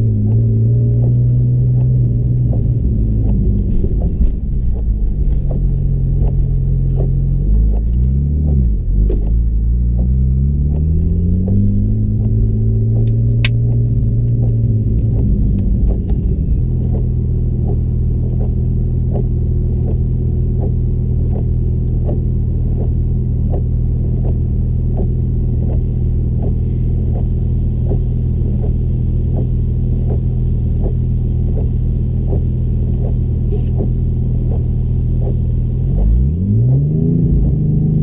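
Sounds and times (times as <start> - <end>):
car engine idling with pulse: 0.0 - 38.0.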